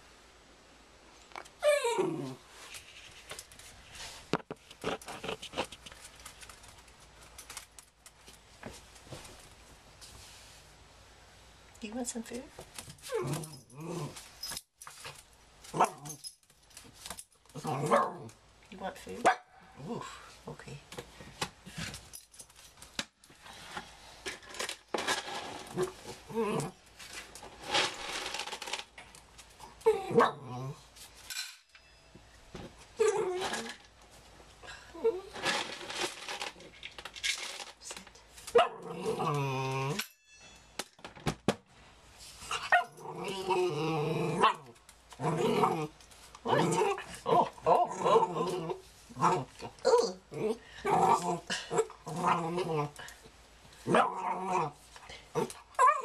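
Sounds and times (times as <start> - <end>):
dog whining: 1.6 - 2.4.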